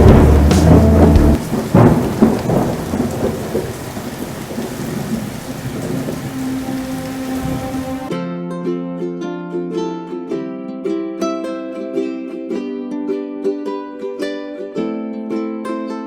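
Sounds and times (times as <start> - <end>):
music track: 0.0 - 1.4, 6.1 - 16.0
steady rain: 0.0 - 8.1
thunder cracks: 0.0 - 8.1.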